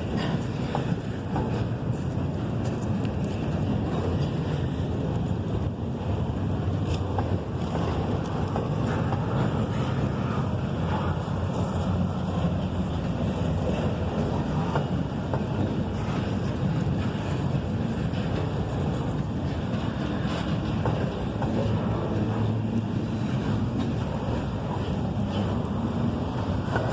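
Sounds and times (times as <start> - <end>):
train wheels rumbling on rail: 0.0 - 26.9.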